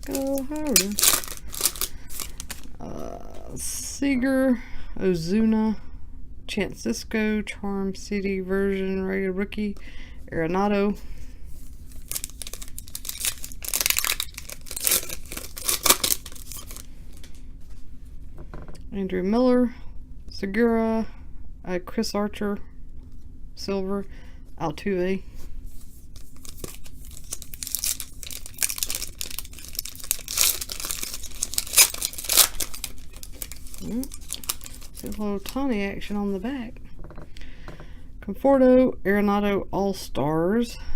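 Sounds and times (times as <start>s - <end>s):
foil wrapper tearing and crinkling: 0.0s - 2.7s, 11.9s - 17.4s, 26.2s - 35.7s.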